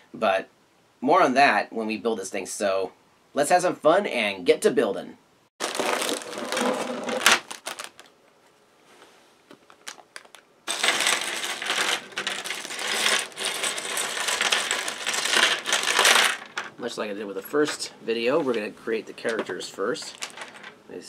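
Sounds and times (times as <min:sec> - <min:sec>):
plastic pieces clattering: 0:05.6 - 0:08.1, 0:09.5 - 0:16.8, 0:19.3 - 0:20.8.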